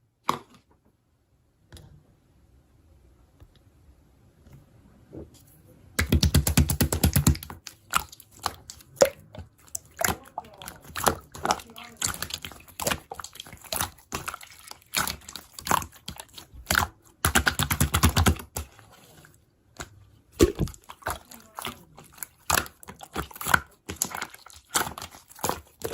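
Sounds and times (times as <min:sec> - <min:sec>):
wet clicking and popping: 0:06.0 - 0:18.7, 0:19.7 - 0:25.9.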